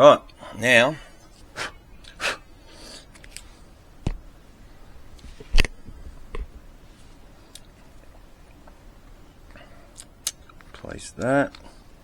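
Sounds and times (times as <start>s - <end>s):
soft rustle: 2.6s - 10.0s.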